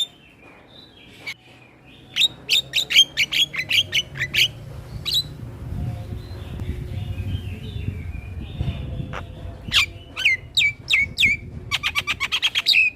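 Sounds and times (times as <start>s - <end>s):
bird chattering: 2.1s - 5.4s, 6.2s - 12.9s.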